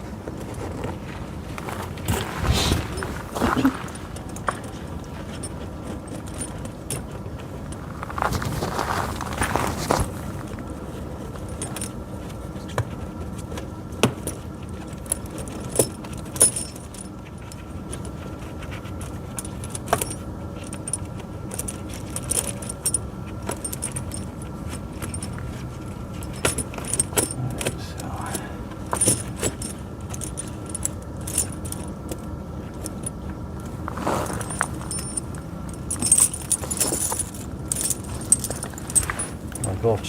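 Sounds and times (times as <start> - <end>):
steady background hum: 0.0 - 40.0
chain links clinking: 14.2 - 18.8, 19.4 - 33.2, 33.9 - 40.0.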